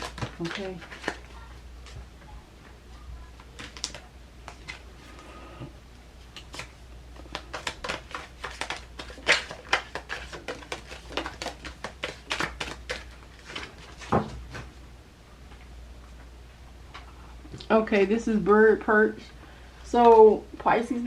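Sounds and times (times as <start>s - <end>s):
cards shuffled and tapped on table: 0.0s - 2.0s, 6.4s - 14.7s.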